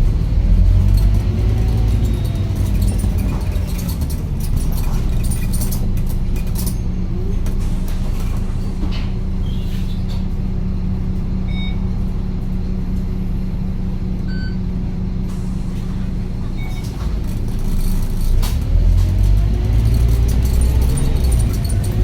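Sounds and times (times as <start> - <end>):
bus engine revving: 0.0 - 9.9, 15.3 - 22.0
bus engine idling: 0.0 - 22.0.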